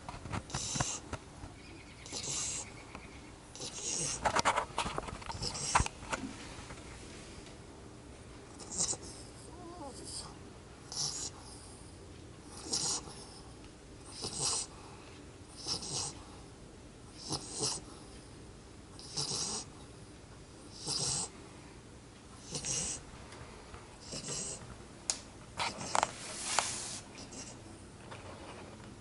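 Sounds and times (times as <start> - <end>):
puppy snoring: 0.5 - 1.1, 2.0 - 2.8, 3.5 - 4.4, 5.3 - 5.9, 8.5 - 11.8, 12.4 - 13.4, 14.0 - 14.8, 15.5 - 16.3, 17.1 - 18.0, 19.0 - 19.9, 20.7 - 21.4, 22.4 - 23.1, 24.0 - 24.7, 25.6 - 27.6
rustling: 25.6 - 27.1.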